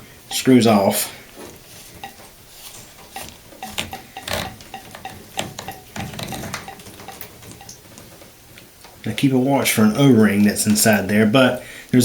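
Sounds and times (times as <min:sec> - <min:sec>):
threaded fitting clicking and scraping: 0:01.3 - 0:09.0.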